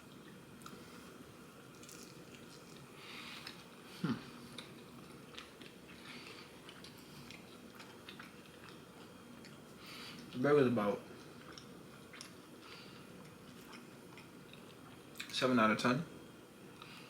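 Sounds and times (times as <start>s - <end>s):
person chewing food: 1.7s - 10.4s, 11.2s - 15.3s.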